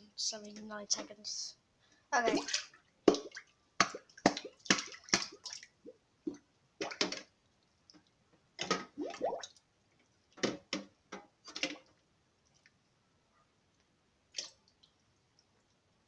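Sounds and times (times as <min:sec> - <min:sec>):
wet squishing and dripping: 0:02.3 - 0:10.5, 0:13.7 - 0:15.8.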